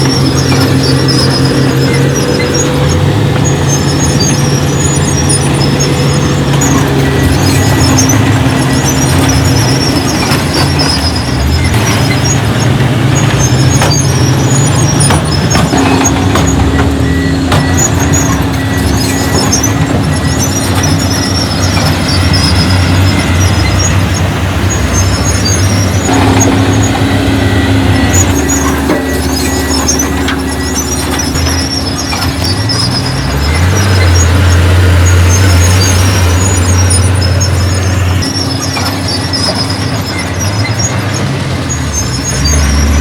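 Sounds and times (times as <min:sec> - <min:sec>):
heavy diesel machinery engines: 0:00.0 - 0:43.0.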